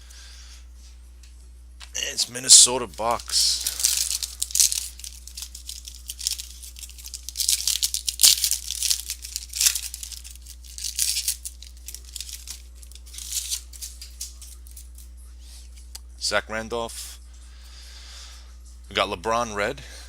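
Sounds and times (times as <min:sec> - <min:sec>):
card wrappers tearing and crinkling: 0:02.0 - 0:15.1.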